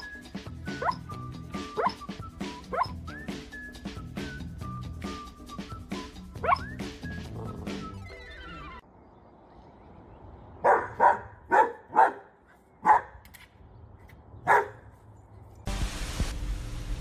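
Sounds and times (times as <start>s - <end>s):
dog barking: 6.4s - 6.7s, 10.6s - 13.2s, 14.5s - 14.9s.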